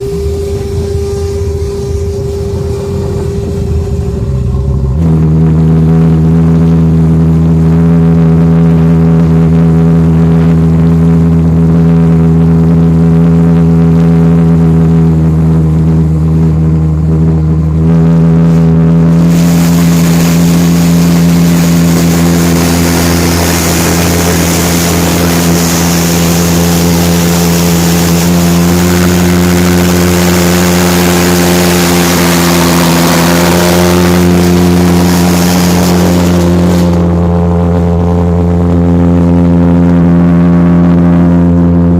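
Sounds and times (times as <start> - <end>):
pulse jet engine buzzing drone: 0.0 - 41.9
rushing noise: 13.6 - 41.1.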